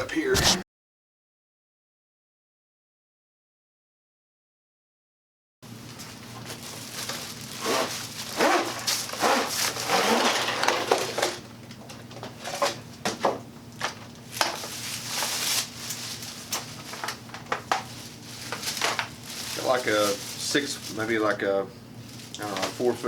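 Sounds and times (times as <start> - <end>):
objects being handled: 5.9 - 11.4, 13.8 - 20.9.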